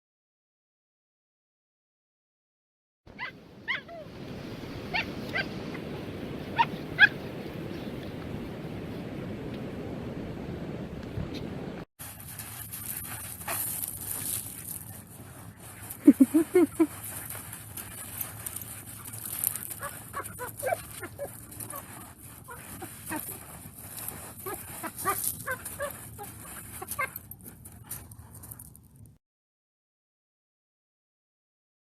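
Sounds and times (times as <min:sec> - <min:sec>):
puppy yipping and whimpering: 0:03.2 - 0:04.1, 0:04.9 - 0:05.5, 0:06.6 - 0:07.2, 0:19.0 - 0:27.2
scraping in sand: 0:11.4 - 0:28.9.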